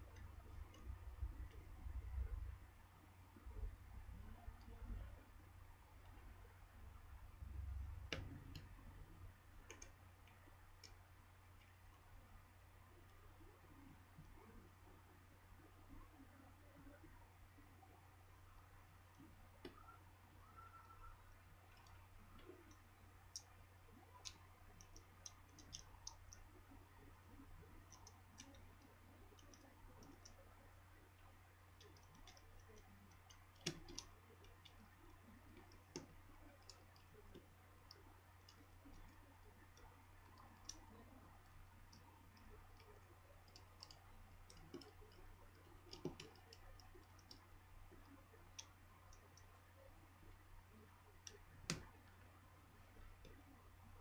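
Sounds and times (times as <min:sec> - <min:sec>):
low hum: 0:00.0 - 0:54.0.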